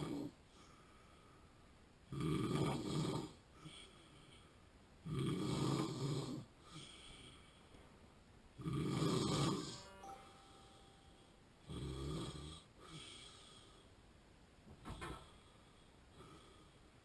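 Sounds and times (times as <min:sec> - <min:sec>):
man snoring: 0:02.1 - 0:03.8, 0:05.0 - 0:06.9, 0:08.6 - 0:09.8, 0:11.7 - 0:13.4.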